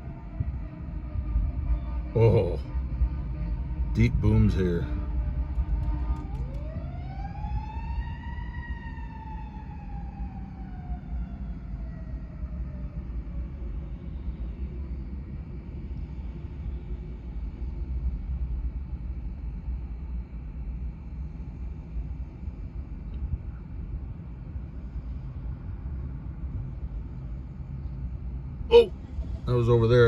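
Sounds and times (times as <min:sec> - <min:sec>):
siren rising and falling: 0:28.7 - 0:28.9.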